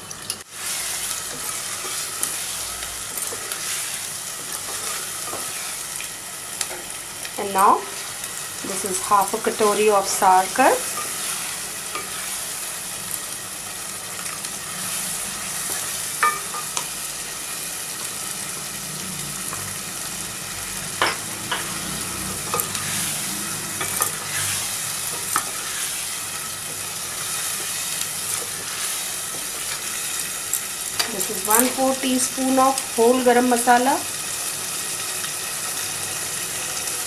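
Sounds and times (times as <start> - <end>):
food sizzling in a pan: 0.0 - 37.0.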